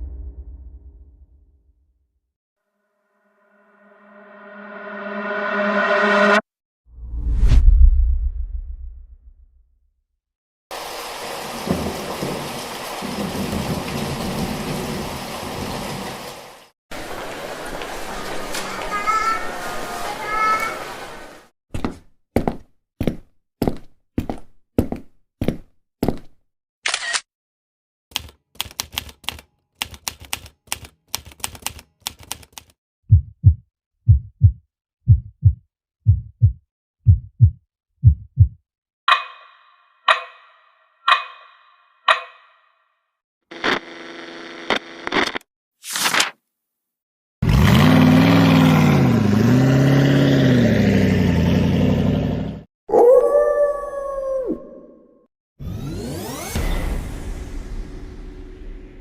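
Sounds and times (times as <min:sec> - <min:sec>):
heavy rain hissing: 0:10.7 - 0:21.4
keyboard typing clicks: 0:28.1 - 0:32.7
heartbeat thumps: 0:33.1 - 0:38.6.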